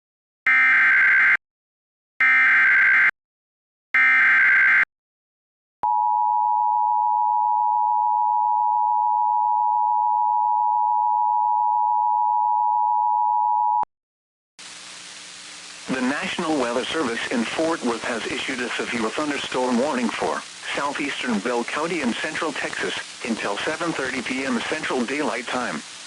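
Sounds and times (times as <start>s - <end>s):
digital data bursts: 15.9s - 25.8s.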